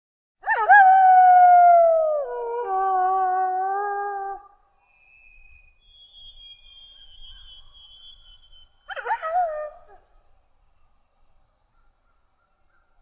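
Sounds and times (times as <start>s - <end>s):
wolf wavering cry: 8.9s - 10.0s.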